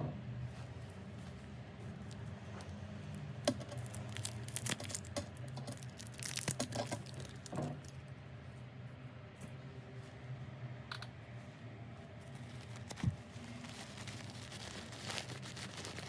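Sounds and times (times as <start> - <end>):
metal hardware clinking: 3.4 - 8.0.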